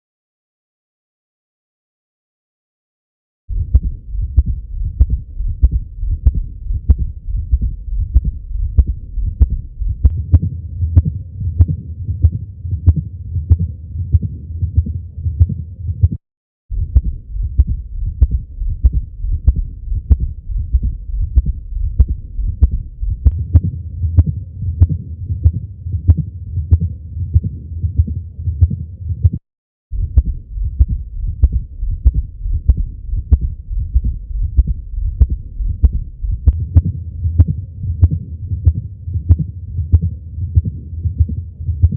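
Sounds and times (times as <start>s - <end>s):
heartbeat: 3.5s - 41.9s
low rumble: 3.5s - 41.9s.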